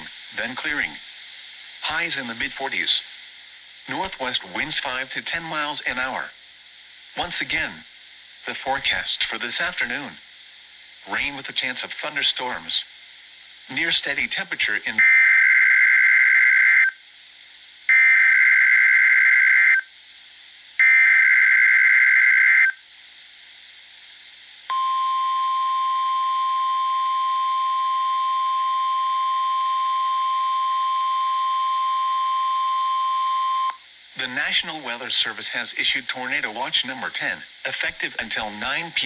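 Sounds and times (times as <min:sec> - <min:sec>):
screeching digital data bursts: 0:13.8 - 0:17.0, 0:17.9 - 0:19.9, 0:20.8 - 0:22.8
steady single-pitched alarm tone: 0:17.9 - 0:19.8, 0:20.8 - 0:22.8, 0:24.7 - 0:33.8.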